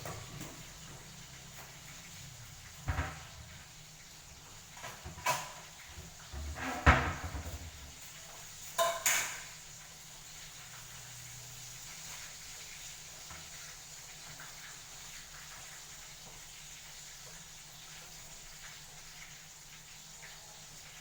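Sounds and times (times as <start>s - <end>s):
kitchen knocking and clatter: 0.0s - 1.8s, 2.6s - 3.8s, 4.8s - 9.6s.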